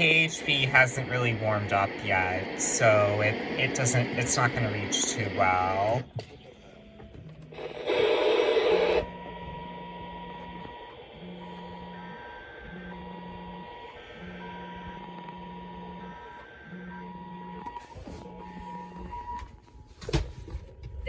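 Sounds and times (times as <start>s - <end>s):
low buzz: 0.0s - 6.2s
noise burst: 0.0s - 6.2s, 7.5s - 12.6s.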